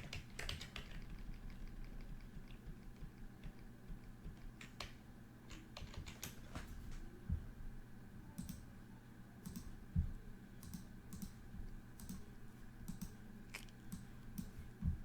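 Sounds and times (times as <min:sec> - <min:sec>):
keyboard and mouse clicks: 0:09.4 - 0:09.7, 0:10.6 - 0:11.4, 0:12.0 - 0:14.6.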